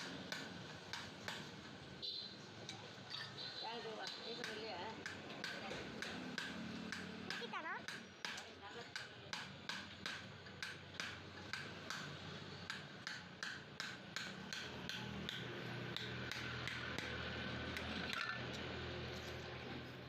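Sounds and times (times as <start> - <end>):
hammer striking metal: 4.1 - 8.4, 12.7 - 17.1.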